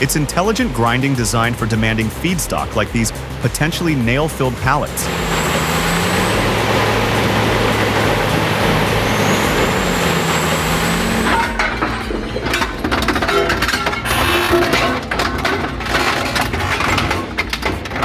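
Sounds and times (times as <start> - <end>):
grinder engine drone: 0.0 - 18.0.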